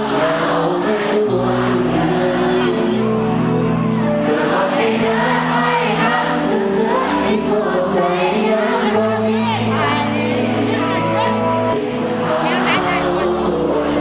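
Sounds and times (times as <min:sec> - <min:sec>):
person singing: 0:00.0 - 0:14.0
live band music: 0:08.5 - 0:13.4.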